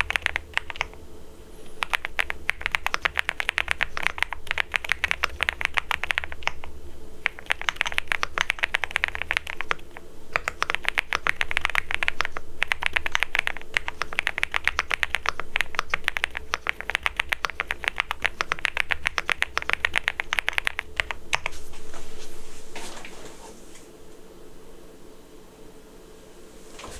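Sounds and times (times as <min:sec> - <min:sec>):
mechanical keyboard typing: 0:00.0 - 0:01.0, 0:01.8 - 0:21.5.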